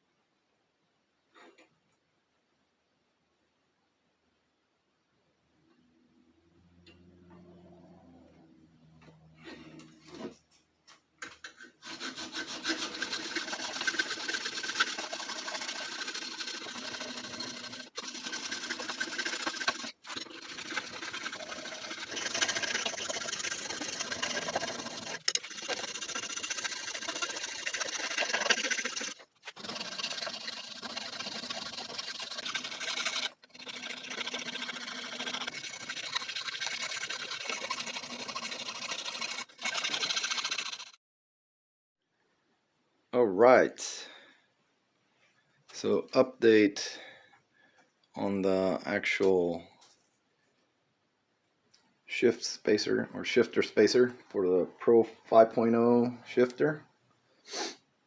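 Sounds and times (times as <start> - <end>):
file rasping on aluminum: 11.4 - 41.0.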